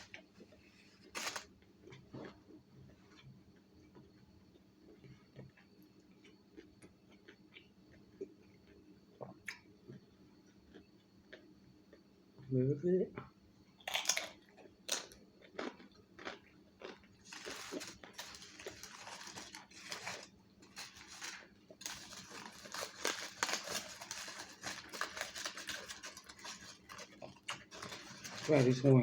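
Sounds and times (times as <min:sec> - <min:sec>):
rustling and crinkling: 0:00.0 - 0:02.4, 0:17.2 - 0:29.0
chewing and biting: 0:13.9 - 0:20.8.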